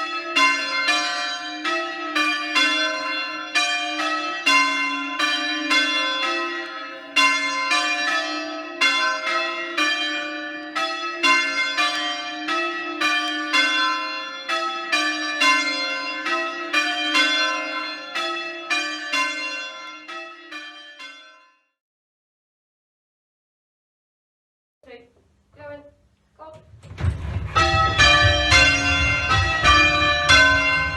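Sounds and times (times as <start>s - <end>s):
church bells ringing: 0.0s - 21.8s, 27.0s - 30.9s.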